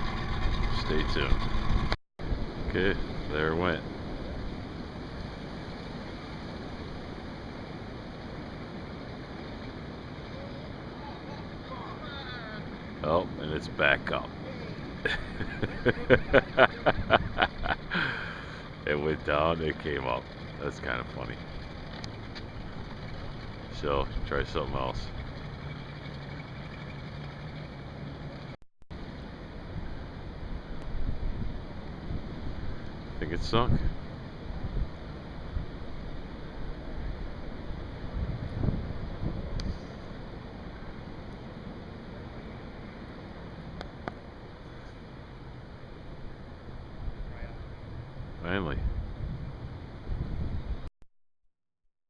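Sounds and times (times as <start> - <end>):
boat motor humming: 0.0 - 30.8
water around boat: 0.0 - 50.9
wind on microphone: 30.8 - 40.4, 48.7 - 50.9.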